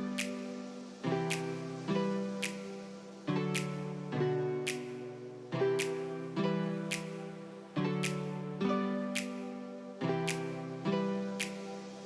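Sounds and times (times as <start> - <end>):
light steady beat: 0.0 - 2.8, 4.7 - 8.4, 9.0 - 12.0.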